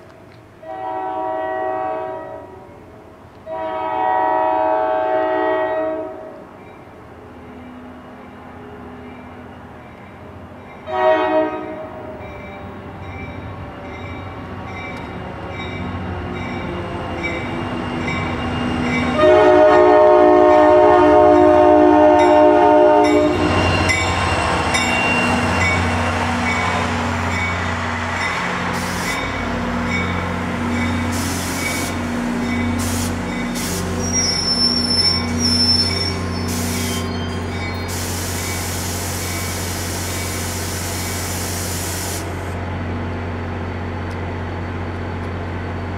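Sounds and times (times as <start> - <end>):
rail noise: 0.0 - 45.9
train engine rumble: 0.0 - 45.9
train horn blast: 0.6 - 2.8, 3.4 - 6.4, 10.8 - 12.2, 19.1 - 23.7
railroad crossing bell pinging: 9.1 - 11.0, 11.6 - 40.6.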